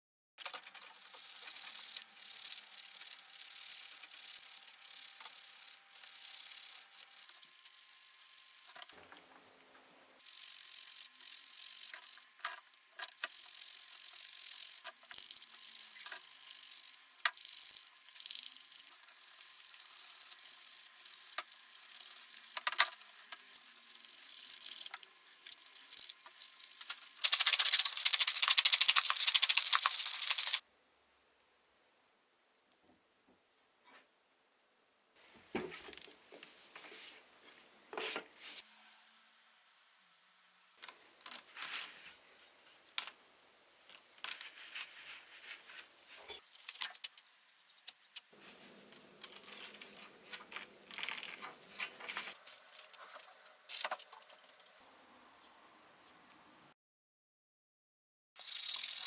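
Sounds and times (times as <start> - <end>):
metal parts clicking and rattling: 10.2 - 30.6, 49.2 - 54.8.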